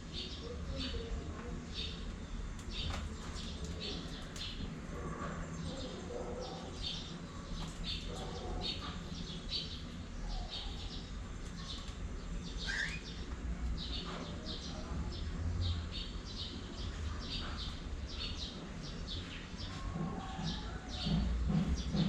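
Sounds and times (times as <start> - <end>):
cockatiels chirping: 12.6 - 13.1.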